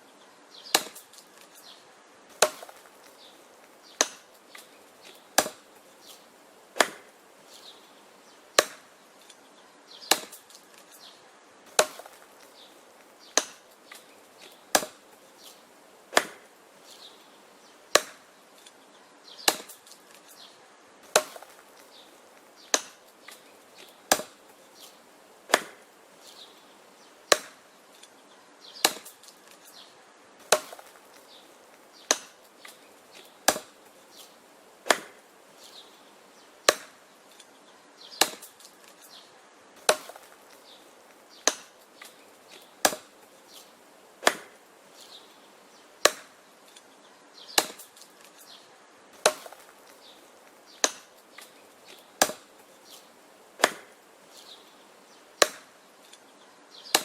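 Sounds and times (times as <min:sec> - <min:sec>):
wood being chopped: 0:00.7 - 0:01.6, 0:02.3 - 0:03.2, 0:03.9 - 0:07.2, 0:08.6 - 0:09.4, 0:10.0 - 0:11.0, 0:11.7 - 0:16.5, 0:17.9 - 0:18.7, 0:19.4 - 0:20.3, 0:21.0 - 0:25.9, 0:27.3 - 0:28.1, 0:28.8 - 0:29.8, 0:30.4 - 0:35.8, 0:36.6 - 0:37.5, 0:38.1 - 0:39.2, 0:39.8 - 0:45.1, 0:46.0 - 0:46.8, 0:47.5 - 0:48.4, 0:49.2 - 0:54.5, 0:55.4 - 0:55.8.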